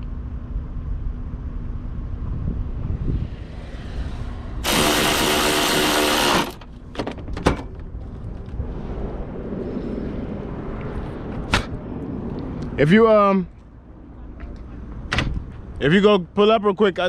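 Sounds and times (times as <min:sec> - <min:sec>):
low background rumble: 0:00.0 - 0:15.9
power tool running: 0:03.6 - 0:06.7.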